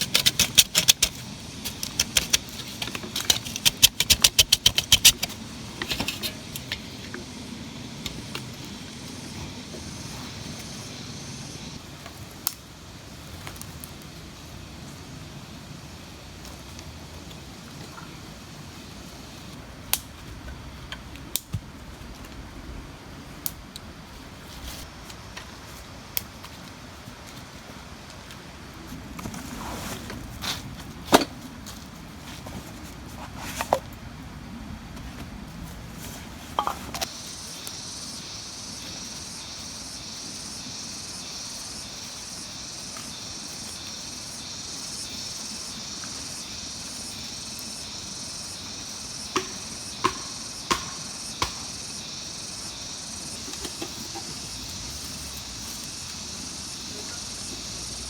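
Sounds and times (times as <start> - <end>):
crickets chirping: 0.0 - 58.0.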